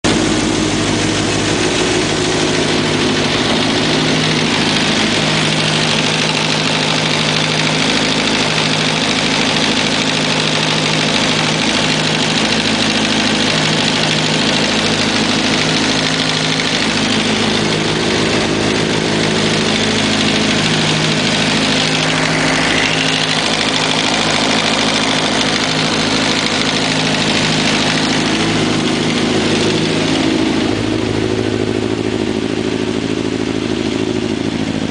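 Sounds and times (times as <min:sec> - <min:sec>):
motorcycle engine idling: 0:00.0 - 0:34.9.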